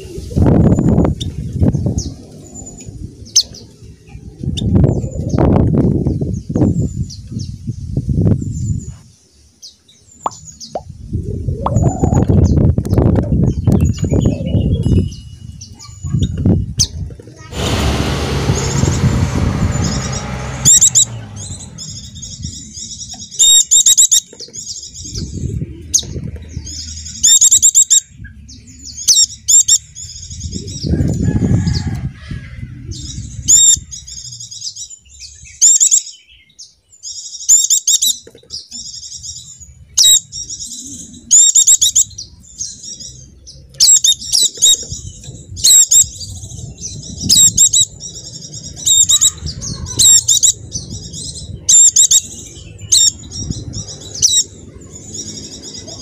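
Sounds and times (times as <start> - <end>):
low rumble: 16.6 - 23.4
high-pitched bird chirps: 48.7 - 56.0.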